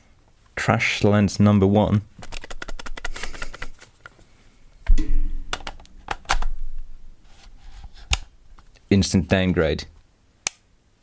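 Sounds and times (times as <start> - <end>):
loud thunk: 4.9 - 6.9.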